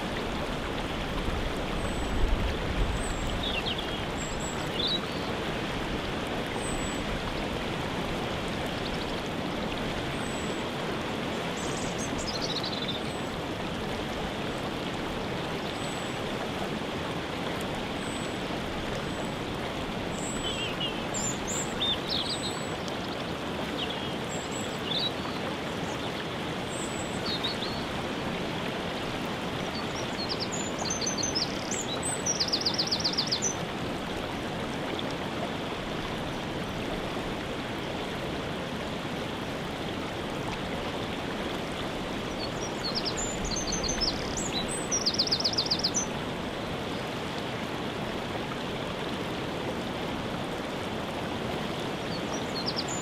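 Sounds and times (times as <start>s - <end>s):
songbird singing with trill: 3.0s - 5.3s, 20.2s - 22.7s, 29.7s - 33.6s, 42.4s - 46.1s.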